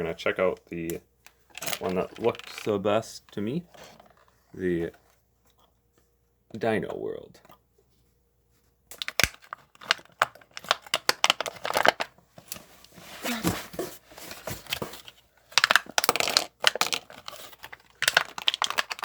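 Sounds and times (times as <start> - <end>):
packaging being torn open: 8.9 - 12.1, 15.6 - 19.0.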